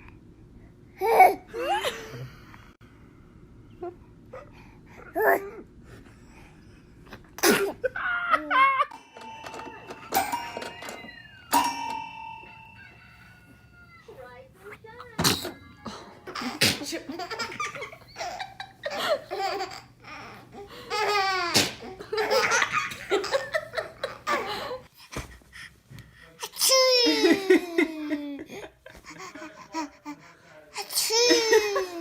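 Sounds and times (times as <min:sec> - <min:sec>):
baby laughing: 0:16.2 - 0:24.9.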